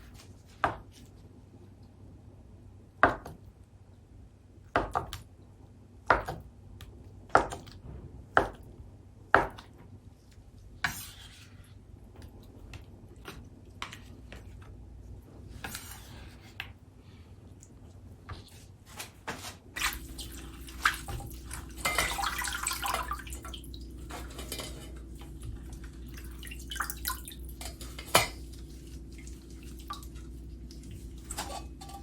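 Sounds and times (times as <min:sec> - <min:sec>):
knife chopping on cutting board: 0:06.1 - 0:06.4.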